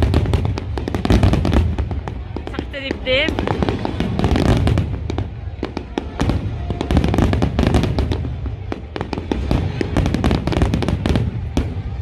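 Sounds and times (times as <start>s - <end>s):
fireworks cracks and bangs: 0.0s - 12.0s.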